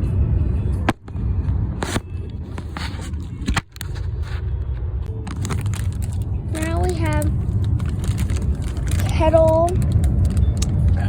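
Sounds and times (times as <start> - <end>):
road noise inside moving car: 0.0 - 11.0
clicks and scrapes: 0.9 - 1.2, 1.8 - 4.5.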